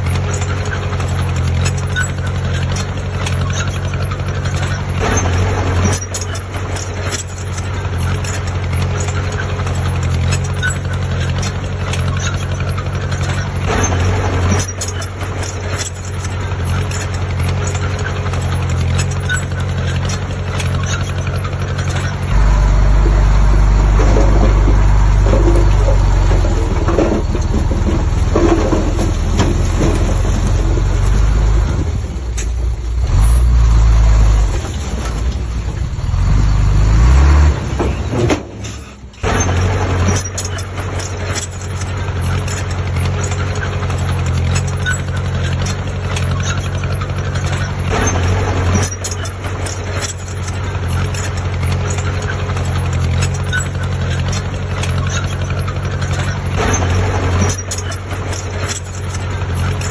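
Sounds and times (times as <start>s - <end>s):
heavy diesel engine revving: 0.0s - 59.9s.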